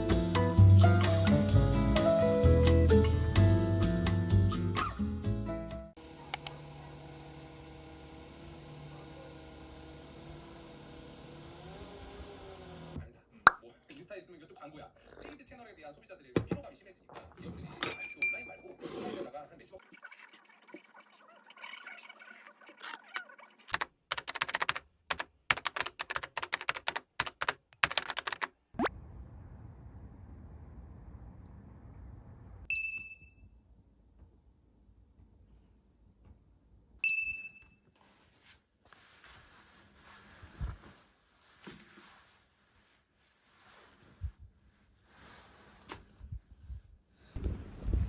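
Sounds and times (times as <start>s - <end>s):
quick clicks: 6.4s - 6.6s
typing on a computer keyboard: 23.7s - 28.5s.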